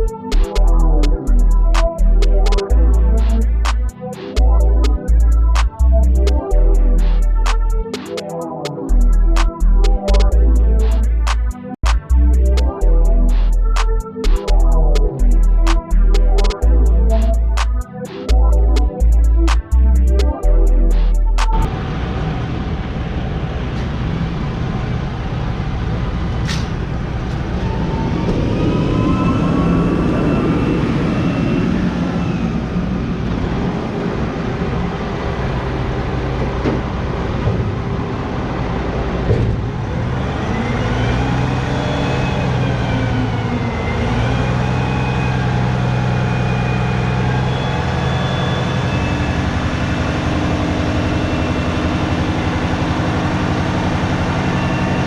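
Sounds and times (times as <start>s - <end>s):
truck diesel engine: 14.5s - 55.0s
road noise: 21.5s - 55.0s.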